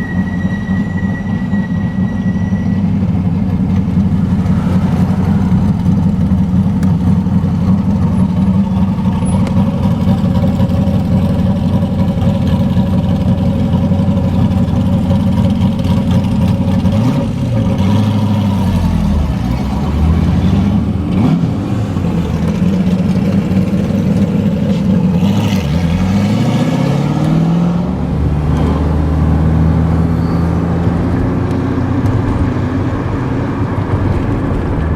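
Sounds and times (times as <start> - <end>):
car engine idling and revving: 0.0 - 34.9.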